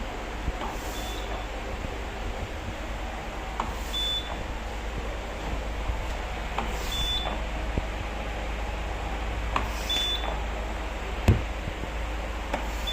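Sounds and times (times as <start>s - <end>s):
steady low hum: 0.0s - 12.9s
sharp knock: 11.3s - 11.5s.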